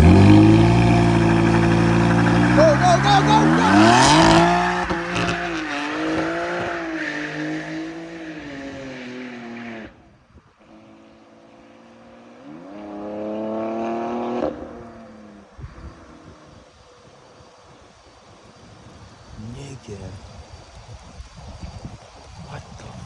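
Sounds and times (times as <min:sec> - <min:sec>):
car engine revving: 0:00.0 - 0:10.0, 0:11.9 - 0:15.4.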